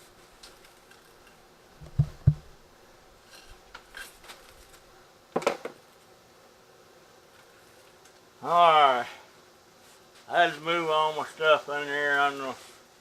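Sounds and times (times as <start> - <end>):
low thuds on hard surface: 1.8 - 2.6.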